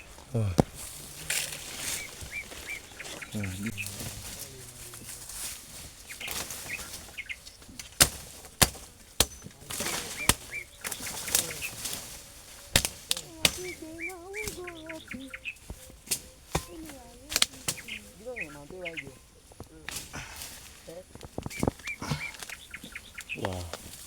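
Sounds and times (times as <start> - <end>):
rustling: 0.0 - 24.0
wavering call: 1.0 - 7.2, 9.8 - 19.0.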